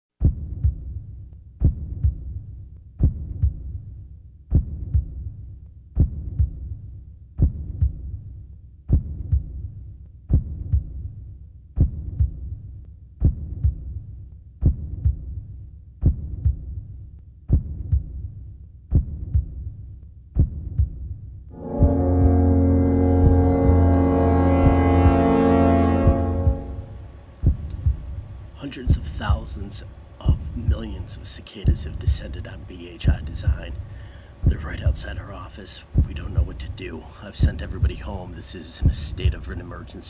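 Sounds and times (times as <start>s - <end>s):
heavy double thumps: 21.6s - 28.0s
low droning hum: 21.6s - 35.4s.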